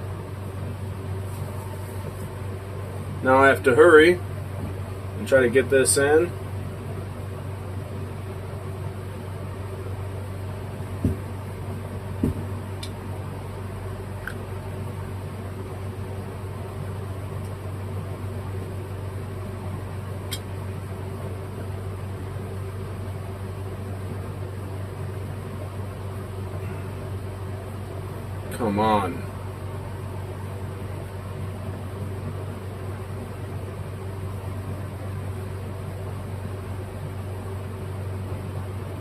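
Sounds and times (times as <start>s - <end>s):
low mechanical hum: 0.0s - 39.0s
dull knocks: 11.0s - 11.3s, 12.2s - 12.5s.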